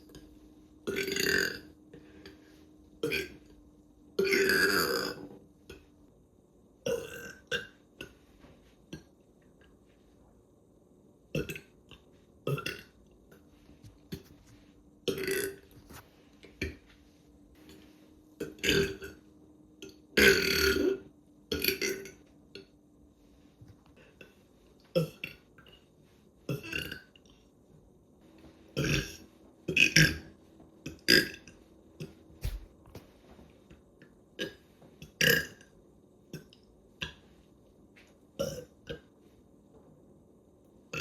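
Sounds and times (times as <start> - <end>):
person burping: 0.9 - 1.8, 3.0 - 3.5, 4.2 - 5.4, 6.9 - 8.2, 11.4 - 11.8, 12.4 - 13.0, 15.1 - 15.6, 18.4 - 19.2, 19.8 - 22.2, 25.0 - 25.4, 26.5 - 27.1, 28.8 - 30.3, 34.4 - 35.7, 38.4 - 39.1.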